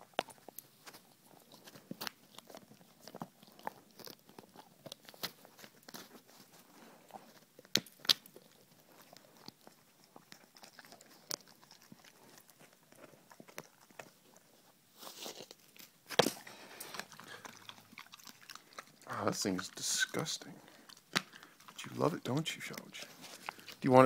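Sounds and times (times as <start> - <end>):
dog chewing with wet crunches: 0.0 - 24.0.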